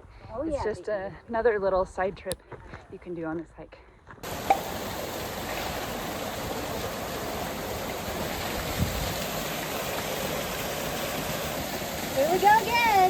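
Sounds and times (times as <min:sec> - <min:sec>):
waterfall rushing: 0:04.2 - 0:13.0.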